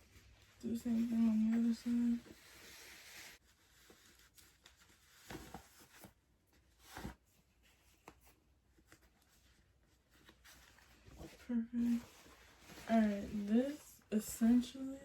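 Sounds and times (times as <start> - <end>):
faint rustles of jeans: 6.8 - 14.7.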